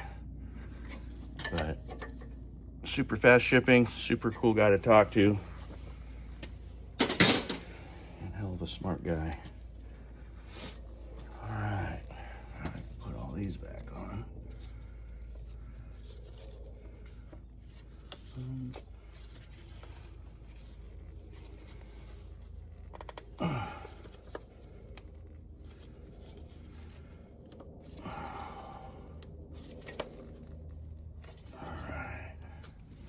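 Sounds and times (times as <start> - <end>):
low steady hum: 0.0 - 33.0
tools clicking and rustling: 7.0 - 7.9.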